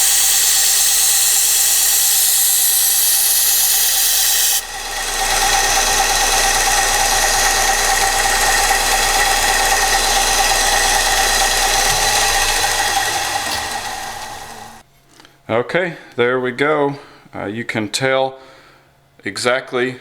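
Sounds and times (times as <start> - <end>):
belt sander whining: 0.0 - 14.8
knife grinding on sanding belt: 0.0 - 14.8.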